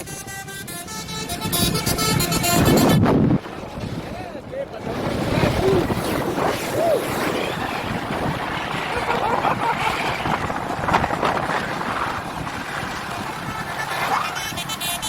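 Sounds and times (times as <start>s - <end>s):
road traffic noise: 0.0s - 15.0s
wind buffeting microphone: 0.0s - 15.0s
faint voices: 3.5s - 11.5s.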